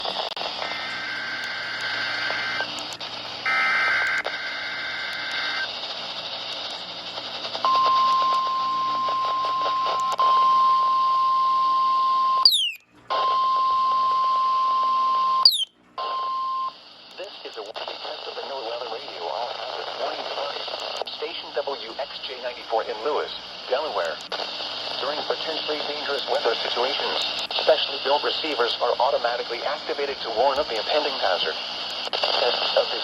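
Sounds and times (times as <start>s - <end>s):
radio hiss: 0.0s - 11.8s, 15.4s - 33.0s
steady alarm tone: 9.7s - 16.7s
falling chirps: 12.4s - 12.8s, 15.4s - 15.7s
warbling digital header tones: 12.4s - 12.8s, 15.4s - 15.7s.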